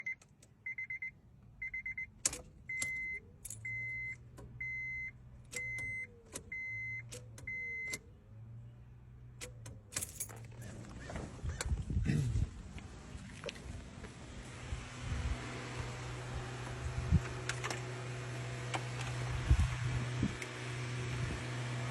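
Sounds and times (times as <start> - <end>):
electronic warning beeps: 0.0 - 2.1, 2.7 - 8.0.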